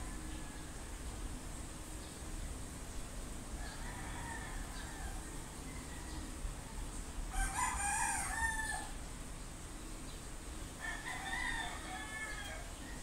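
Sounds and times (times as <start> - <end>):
rooster crowing: 0.0 - 1.1, 3.6 - 9.0, 10.8 - 13.0.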